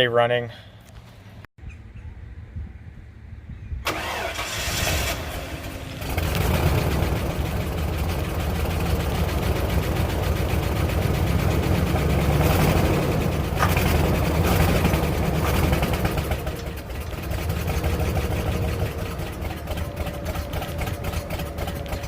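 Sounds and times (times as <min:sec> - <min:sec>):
starter motor cranking: 0:03.9 - 0:07.5
truck engine running: 0:03.9 - 0:22.0.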